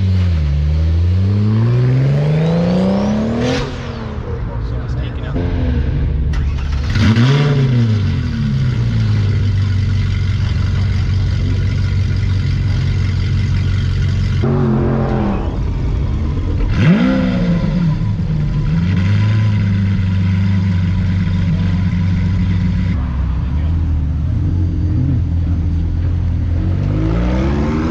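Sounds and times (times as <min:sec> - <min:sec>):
car engine running: 0:00.0 - 0:27.0
engine revving: 0:00.0 - 0:27.9.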